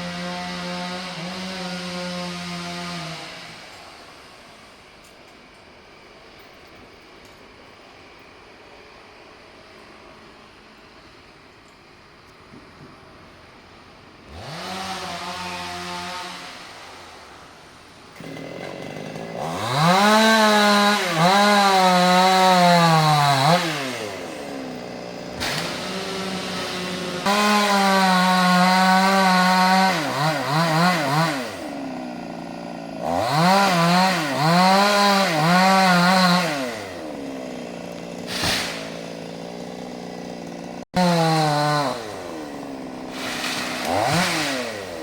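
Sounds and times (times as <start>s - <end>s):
chainsaw revving: 0.0s - 3.8s, 14.3s - 17.2s, 18.2s - 45.0s.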